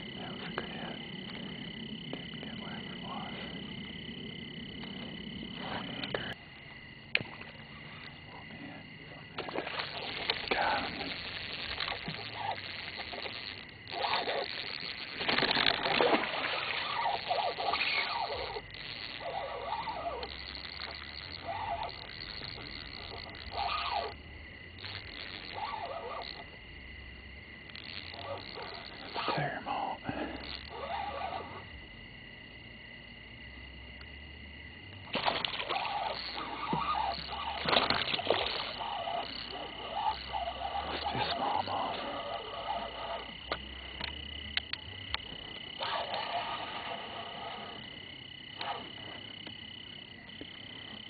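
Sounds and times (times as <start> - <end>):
high-pitched background hum: 0.0 - 51.0
steady background hiss: 0.0 - 51.0
water splashing: 9.3 - 23.7, 35.1 - 41.8.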